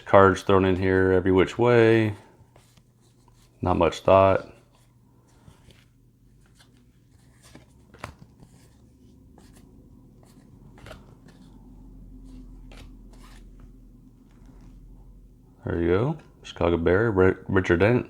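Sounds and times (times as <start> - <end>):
faint low hum: 0.0 - 18.0
trading cards clicking and rustling: 5.4 - 14.7.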